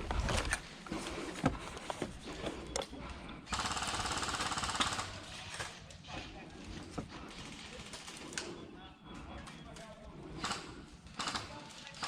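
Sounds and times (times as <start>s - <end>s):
airsoft gun full-auto burst: 3.5s - 5.2s, 10.4s - 12.0s.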